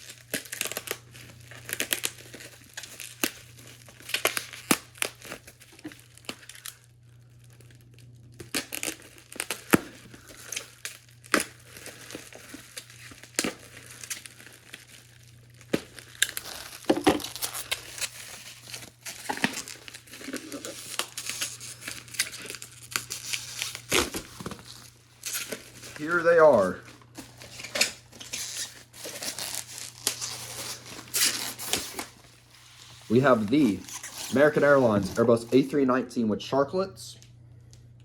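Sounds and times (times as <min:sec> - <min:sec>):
packing material crinkling and tearing: 0:00.0 - 0:35.6.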